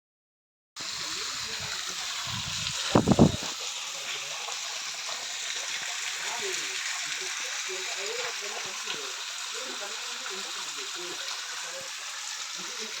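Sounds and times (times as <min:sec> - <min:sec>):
waterfall rushing: 0:01.0 - 0:03.6, 0:05.6 - 0:13.0.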